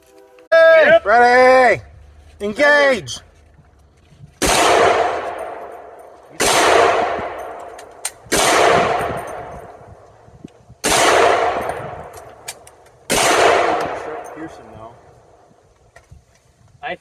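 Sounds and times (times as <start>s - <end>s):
rifle shots with echo: 4.4s - 10.0s, 10.8s - 14.6s.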